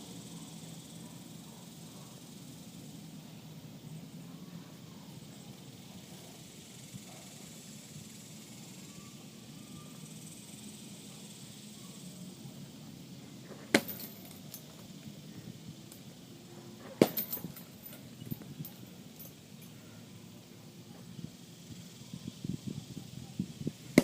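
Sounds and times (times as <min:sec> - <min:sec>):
metallic rattle: 0:13.4 - 0:15.0, 0:16.8 - 0:19.8
punches on punching bag: 0:13.7 - 0:14.3, 0:17.0 - 0:17.5.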